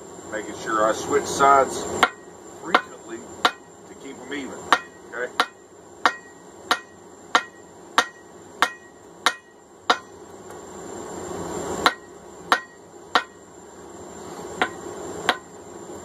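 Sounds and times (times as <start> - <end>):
hammer blows on anvil ringing: 2.0 - 3.7, 4.7 - 10.2, 11.8 - 13.4, 14.6 - 15.5.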